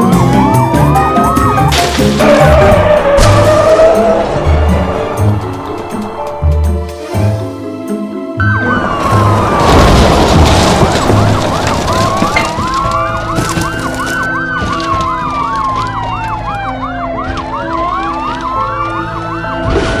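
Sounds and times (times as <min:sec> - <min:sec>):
wailing siren: 0:00.0 - 0:06.6, 0:08.4 - 0:20.0
yelping siren: 0:08.4 - 0:09.7, 0:10.8 - 0:19.7.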